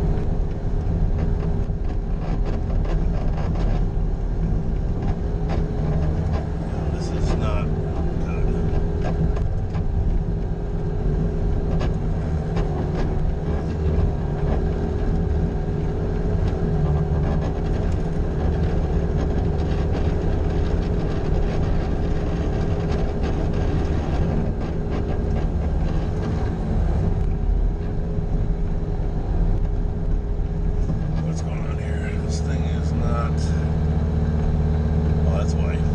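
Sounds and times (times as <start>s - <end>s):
loader engine running under load: 0.0s - 35.9s
high whine: 6.5s - 11.8s, 19.0s - 35.9s.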